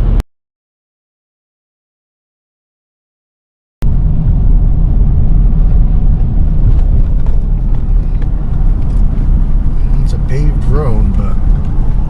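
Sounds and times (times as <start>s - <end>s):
car road and engine rumble: 3.8s - 12.0s.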